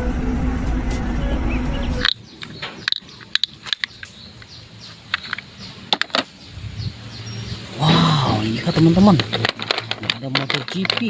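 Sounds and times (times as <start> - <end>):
loud low steady sound: 0.0 - 3.0
plastic toy clicks and knocks: 2.0 - 4.5, 5.1 - 6.3, 8.8 - 11.0.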